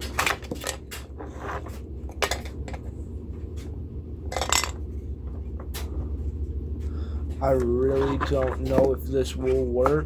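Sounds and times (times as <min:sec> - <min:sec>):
model train handling clicks and scrapes: 0:00.0 - 0:03.8, 0:07.3 - 0:10.0
low steady hum: 0:00.0 - 0:10.0.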